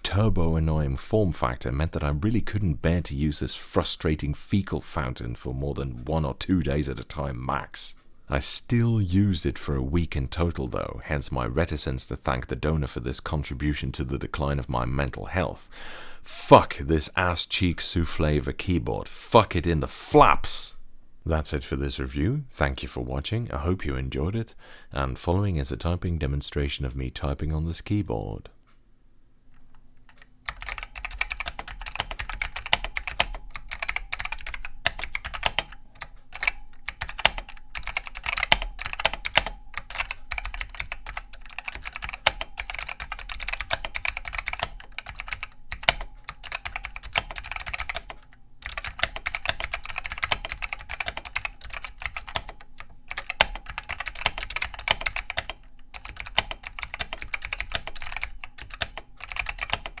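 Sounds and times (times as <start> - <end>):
fast typing on mechanical keyboard: 30.1 - 60.0.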